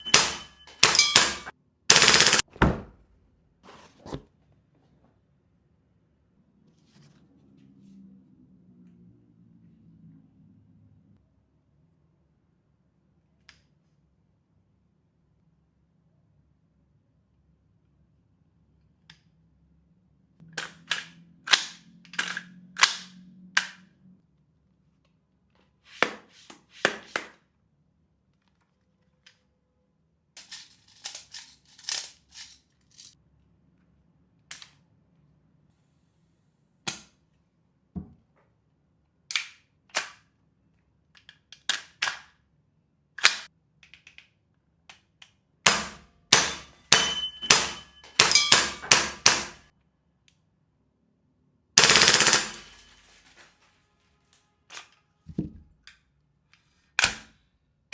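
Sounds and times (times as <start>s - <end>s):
airsoft rifle firing: 0.0s - 2.5s, 45.7s - 49.6s, 51.8s - 52.9s.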